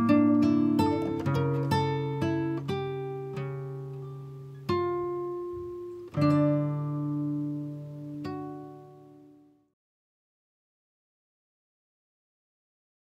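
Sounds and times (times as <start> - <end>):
slow acoustic guitar: 0.0 - 9.8.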